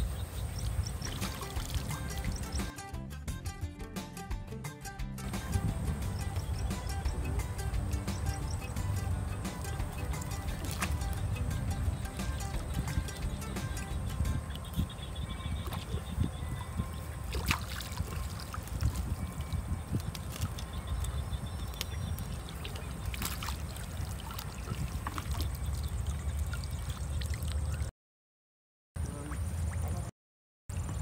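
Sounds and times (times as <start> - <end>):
shallow water sloshing and gurgling: 0.1 - 2.7, 9.6 - 11.3, 12.0 - 27.9
small splashes and clicks: 0.6 - 2.7, 9.5 - 11.2, 17.3 - 27.9
steady low rumble: 5.2 - 17.4.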